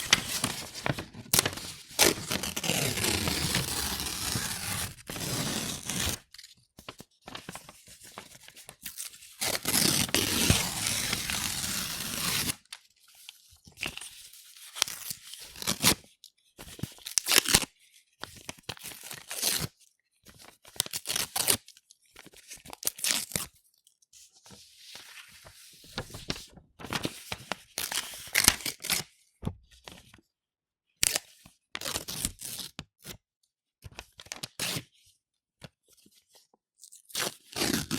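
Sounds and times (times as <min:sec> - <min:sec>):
paper being torn by hand: 0:00.0 - 0:06.2, 0:09.4 - 0:12.6.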